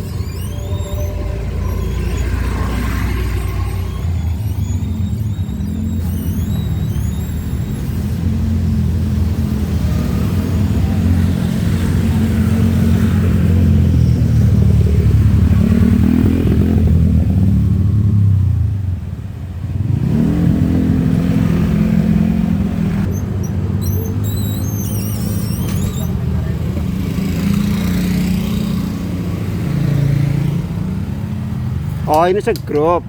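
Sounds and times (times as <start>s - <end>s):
engine rising in pitch: 0.0s - 18.3s
vehicle engines passing close by: 0.0s - 18.8s, 25.2s - 33.0s.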